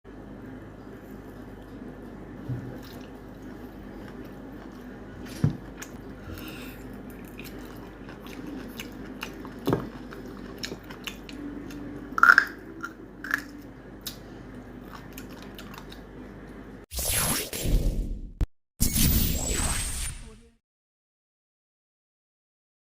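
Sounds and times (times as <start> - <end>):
chewing and wet mouth sounds: 1.0 - 16.7.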